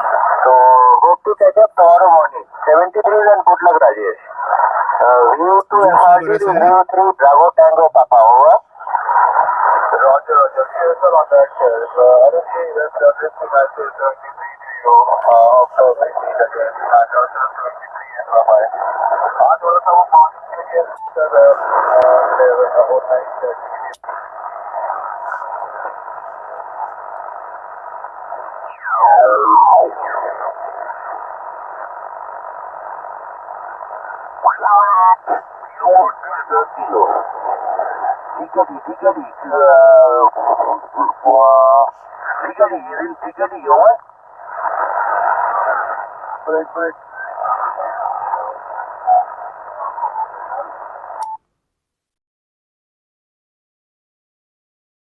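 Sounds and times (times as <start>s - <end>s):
radio band noise hiss: 0.0s - 51.3s
radio click: 20.8s - 27.4s
brief radio tone: 46.7s - 51.4s.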